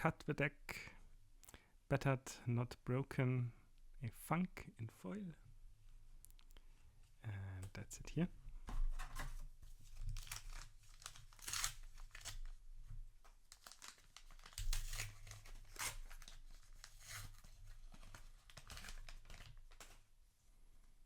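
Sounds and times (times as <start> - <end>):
wrapper being torn and crinkled: 10.1 - 12.6, 13.5 - 20.0.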